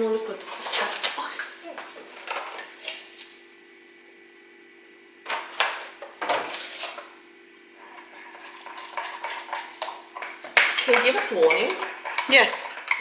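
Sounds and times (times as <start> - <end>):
dishes and utensils clattering: 1.8 - 2.8, 7.8 - 13.0.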